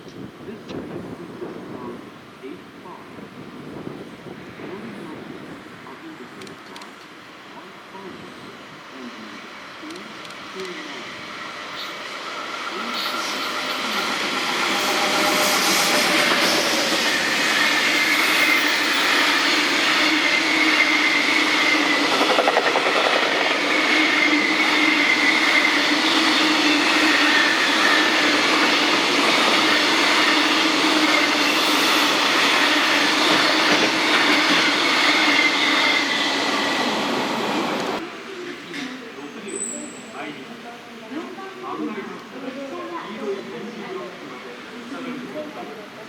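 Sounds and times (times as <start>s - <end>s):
freight train rumbling past: 7.1s - 38.3s
wheels clickety-clack on rails: 21.9s - 23.7s, 33.2s - 34.7s.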